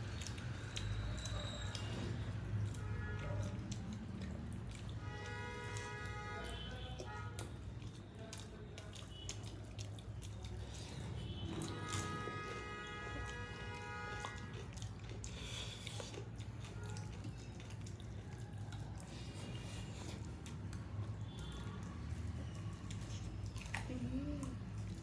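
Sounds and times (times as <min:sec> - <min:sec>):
chewing and wet mouth sounds: 0:00.0 - 0:25.0.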